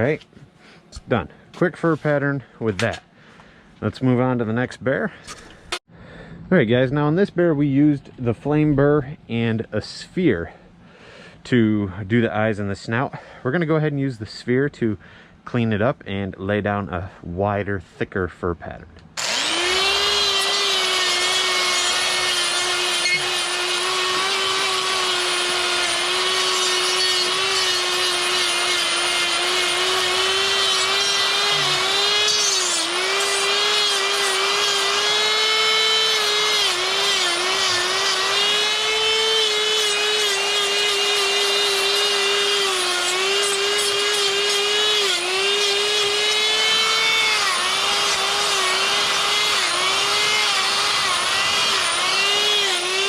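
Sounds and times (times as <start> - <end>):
die grinder whining carving wood: 19.2 - 53.0.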